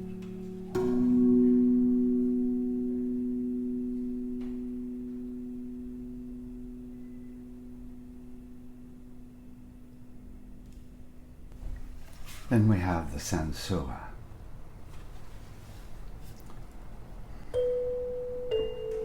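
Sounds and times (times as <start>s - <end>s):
steel tongue drum note: 0.0s - 10.0s, 17.5s - 19.0s.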